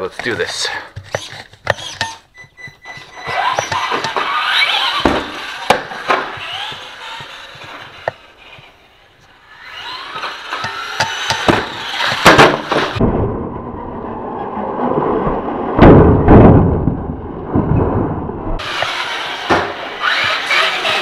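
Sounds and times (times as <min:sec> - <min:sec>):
electric motor whining: 0:01.1 - 0:13.0, 0:18.6 - 0:21.0
toy truck chassis knocks: 0:03.2 - 0:08.7, 0:10.1 - 0:13.0
low rushing noise: 0:12.9 - 0:19.1.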